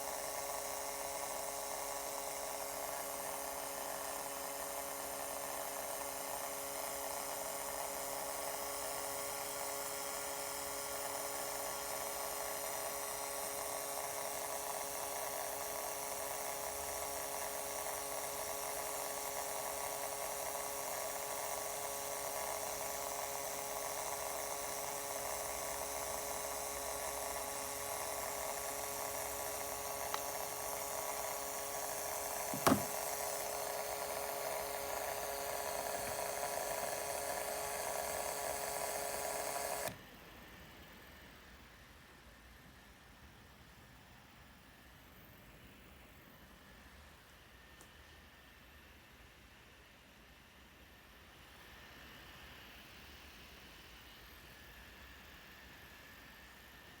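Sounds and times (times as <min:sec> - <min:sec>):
laptop speakers electrical buzz: 0:00.0 - 0:40.0.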